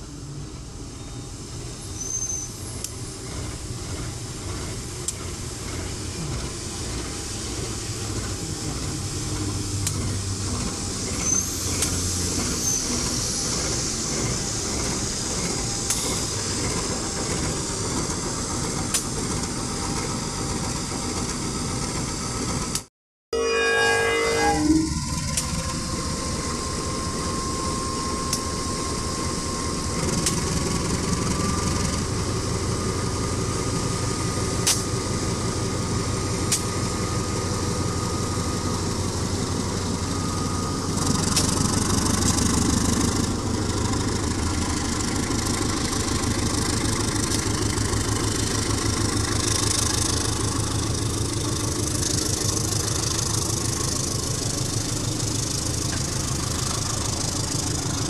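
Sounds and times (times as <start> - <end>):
diesel locomotive engine drone: 0.0 - 58.0
hiss: 4.6 - 19.6.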